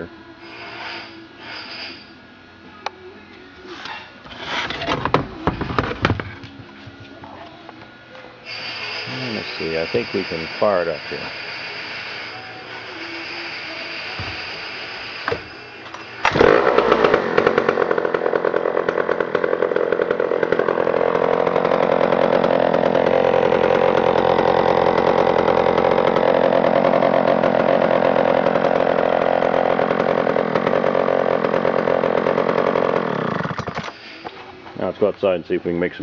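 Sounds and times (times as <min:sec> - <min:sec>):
chainsaw engine running: 0:08.5 - 0:12.0, 0:16.2 - 0:34.2
chainsaw starter pull: 0:16.2 - 0:34.0.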